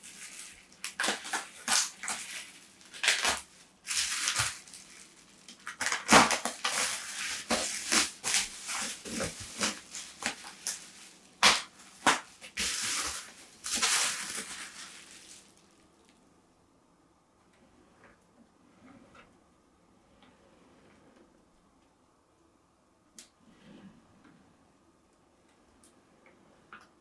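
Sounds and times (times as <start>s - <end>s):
hands scraping and rustling parts: 0.0s - 15.4s.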